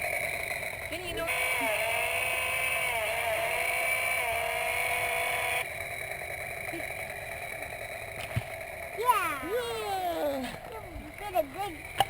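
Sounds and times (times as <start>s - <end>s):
toy chainsaw buzzing: 0.0s - 12.0s.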